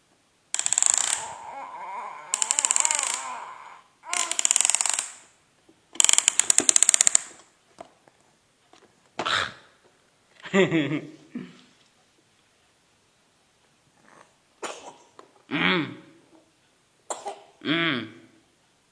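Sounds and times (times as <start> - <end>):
child coughing: 14.6 - 15.2, 17.1 - 17.6.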